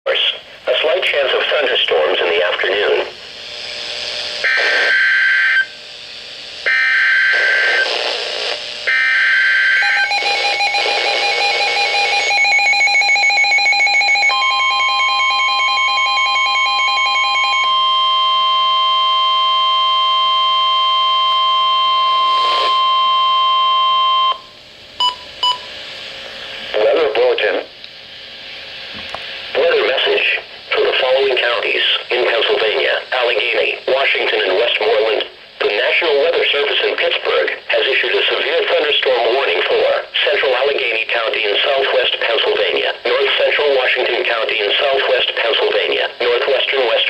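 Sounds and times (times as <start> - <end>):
buzzy digital header bursts: 2.0 - 22.9
steady alarm tone: 4.3 - 5.8, 6.6 - 25.8
short beeps: 21.1 - 25.7.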